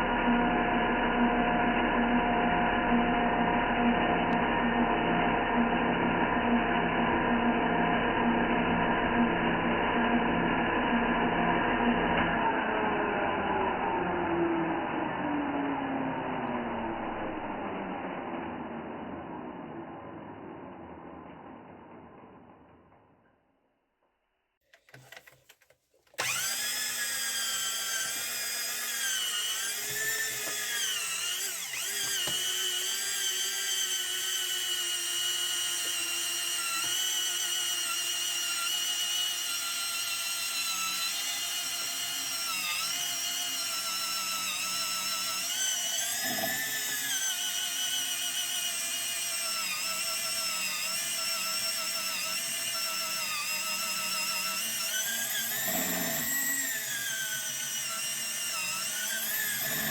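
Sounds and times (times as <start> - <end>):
electric drill whining: 26.2 - 59.9.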